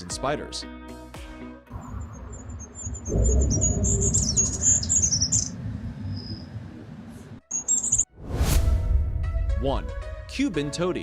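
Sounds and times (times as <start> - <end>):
low rumble: 2.1 - 7.4
bird singing high thin notes: 7.5 - 8.1.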